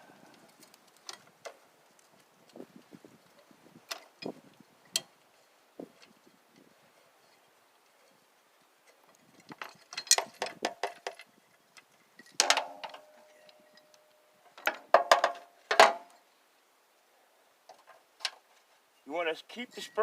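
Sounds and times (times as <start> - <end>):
metal parts clinking: 9.6 - 10.5.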